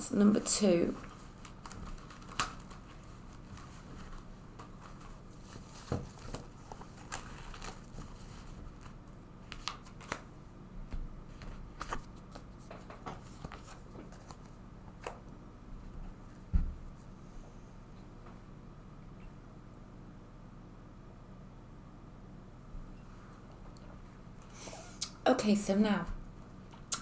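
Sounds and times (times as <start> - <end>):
cards clicking and rustling: 8.7 - 10.3.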